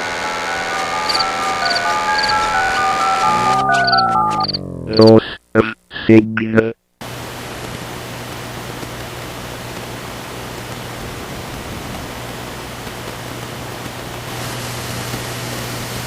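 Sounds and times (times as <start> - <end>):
low hum: 0.0 - 14.2
static hiss: 4.9 - 16.0.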